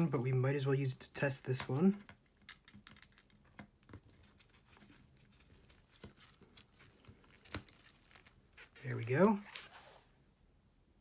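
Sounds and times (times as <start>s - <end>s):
small parts tapping and clicking: 1.6s - 4.2s.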